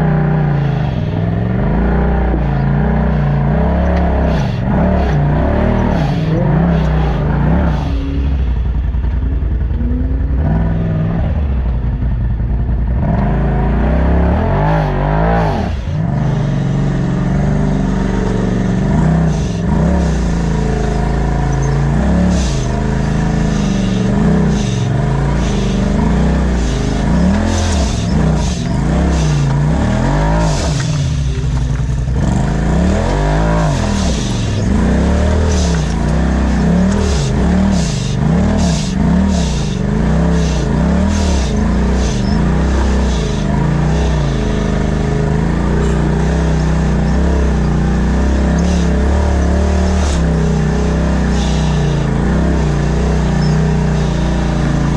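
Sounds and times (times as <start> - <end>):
off-road vehicle engine revving: 0.0 - 54.9.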